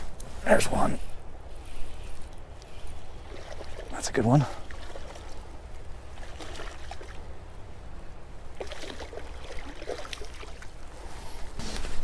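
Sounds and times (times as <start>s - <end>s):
creek water running: 0.0s - 11.4s
small splashes and clicks: 1.6s - 7.3s, 8.5s - 10.9s.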